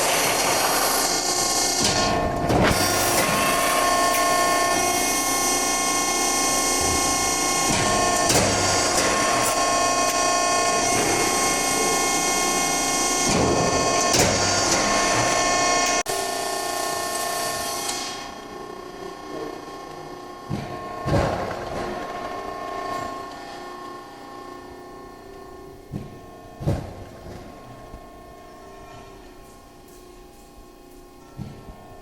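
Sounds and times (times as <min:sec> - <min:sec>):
hydraulic press machine whine: 0:00.0 - 0:32.0.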